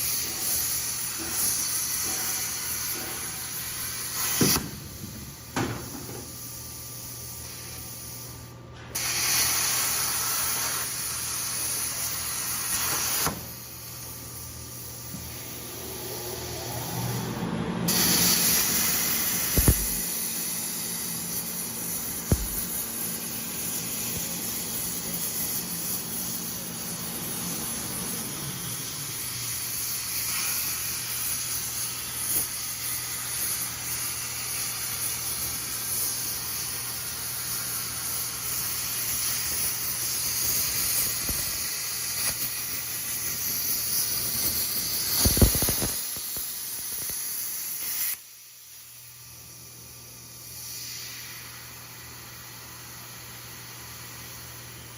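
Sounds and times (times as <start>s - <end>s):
plasma torch hissing: 0.0s - 54.9s
low machine hum: 14.3s - 29.4s
sharp cracks: 19.5s - 20.2s.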